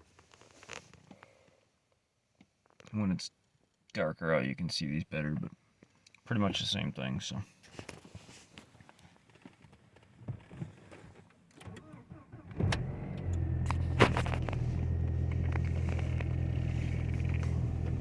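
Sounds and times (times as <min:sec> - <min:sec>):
car engine starting and idling: 0:11.6 - 0:18.0.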